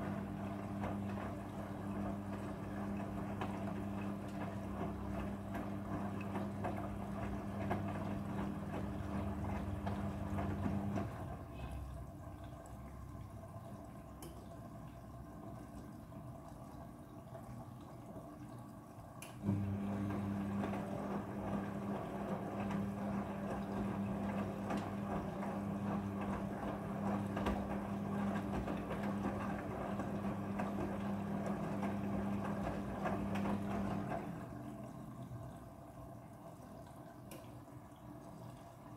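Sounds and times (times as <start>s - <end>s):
washing machine electrical hum: 0.0s - 38.9s
water rushing through machine: 0.0s - 38.9s.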